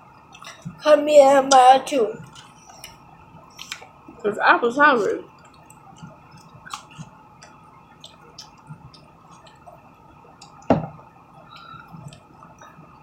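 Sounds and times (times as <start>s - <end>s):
chewing clicks and smacks: 2.2s - 3.9s, 5.3s - 10.7s.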